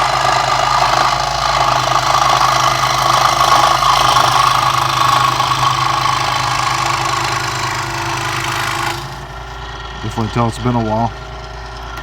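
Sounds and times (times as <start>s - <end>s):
scroll saw cutting plywood: 0.0s - 12.0s.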